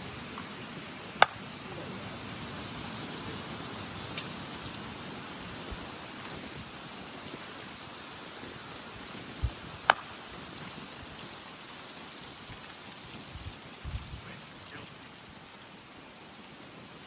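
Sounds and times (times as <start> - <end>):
bat hitting ball: 1.2 - 1.6, 9.8 - 10.2
wind buffeting microphone: 12.5 - 14.8.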